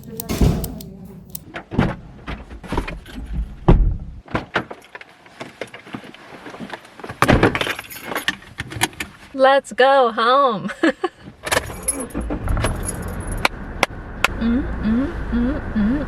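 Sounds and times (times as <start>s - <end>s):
sharp clicks and knocks: 0.0s - 1.6s
keys jangling: 11.6s - 13.4s.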